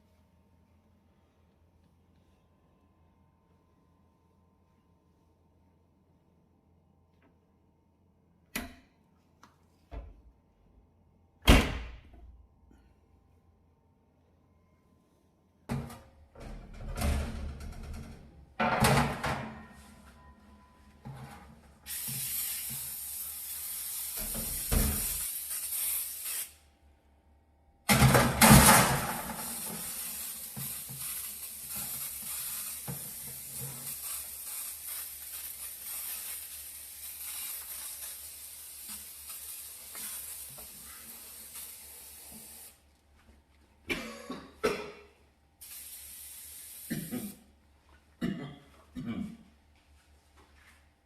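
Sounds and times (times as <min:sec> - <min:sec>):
cleaning spray hissing: 0:21.9 - 0:26.6, 0:29.2 - 0:42.8, 0:45.6 - 0:47.4.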